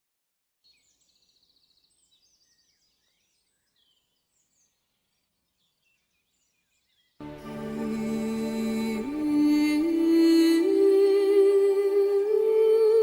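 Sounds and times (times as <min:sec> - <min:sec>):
small birds chirping: 0:00.6 - 0:07.2.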